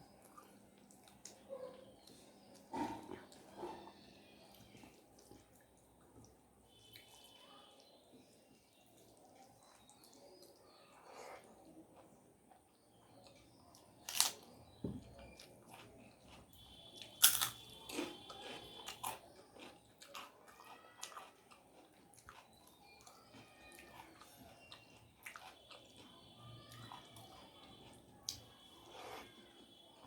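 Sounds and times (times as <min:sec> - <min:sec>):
person chewing crunchy food: 0:09.7 - 0:30.0
loud crunches: 0:17.2 - 0:19.7.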